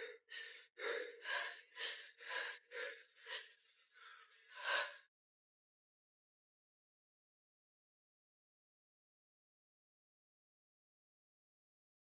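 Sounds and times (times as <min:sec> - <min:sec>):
person panting: 0:00.0 - 0:05.1.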